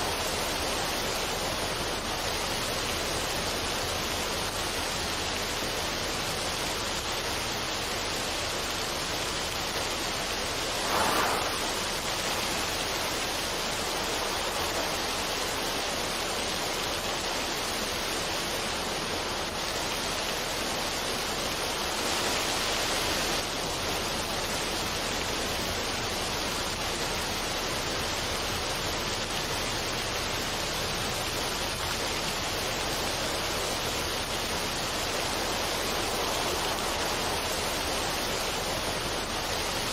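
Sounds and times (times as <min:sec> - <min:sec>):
water rushing over rocks: 0:00.0 - 0:39.9
water splash: 0:10.5 - 0:16.6.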